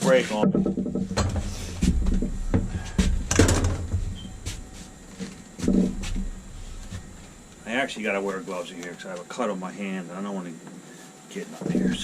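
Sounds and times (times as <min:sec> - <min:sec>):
scraping rattle: 0:00.2 - 0:08.0
pipe and tools clicking: 0:00.3 - 0:07.8.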